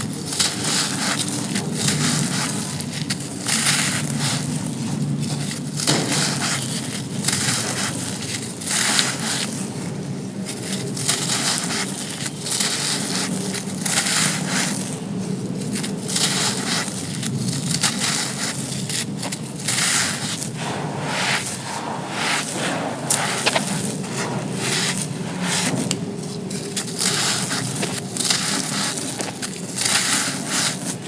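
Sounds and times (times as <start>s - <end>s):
sand crushed by hand: 15.5s - 31.0s.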